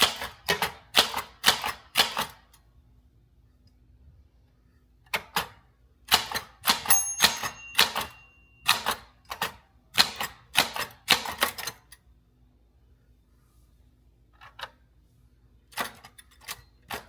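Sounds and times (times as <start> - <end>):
typewriter keys striking: 6.1 - 11.8
typewriter bell ringing: 6.8 - 9.1.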